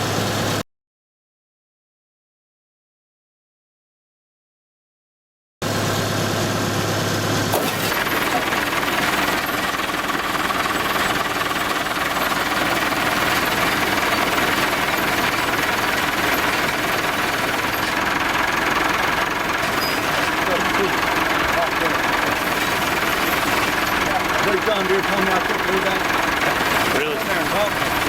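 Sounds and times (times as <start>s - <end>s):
baler mechanical clatter: 7.5s - 28.0s.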